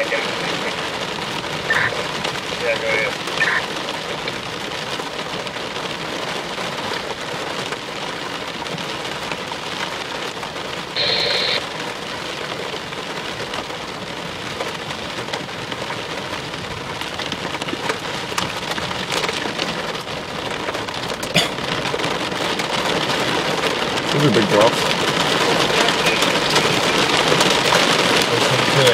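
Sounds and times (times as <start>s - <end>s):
rain pattering on a vehicle: 0.0s - 28.9s
brief loud tone: 11.0s - 11.6s.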